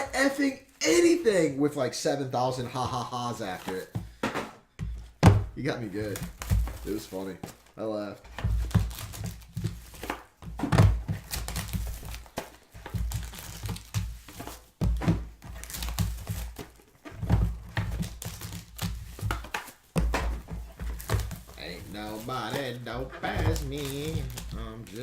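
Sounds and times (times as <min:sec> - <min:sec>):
boxes set down with thuds: 0:03.6 - 0:04.6, 0:08.3 - 0:12.6, 0:18.9 - 0:24.5
wrappers crinkling and tearing: 0:08.5 - 0:10.3, 0:11.1 - 0:14.8, 0:15.4 - 0:17.0, 0:17.8 - 0:19.9, 0:20.8 - 0:25.0.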